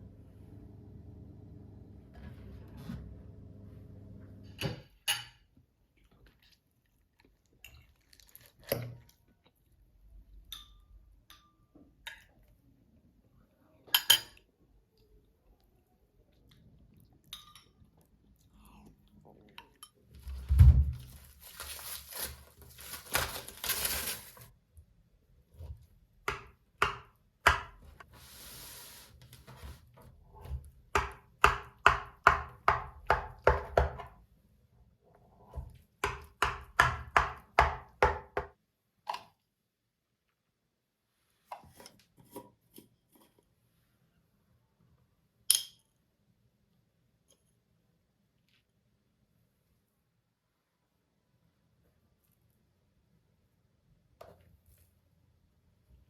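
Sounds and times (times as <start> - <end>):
rustling: 20.2 - 24.5.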